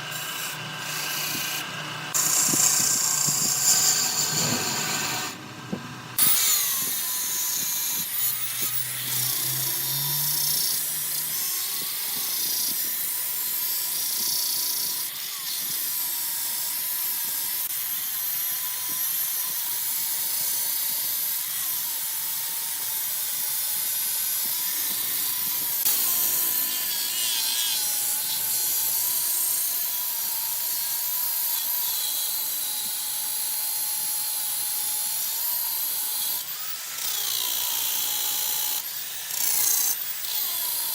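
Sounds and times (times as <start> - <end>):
wood lathe turning tool cutting: 0.0 - 40.9.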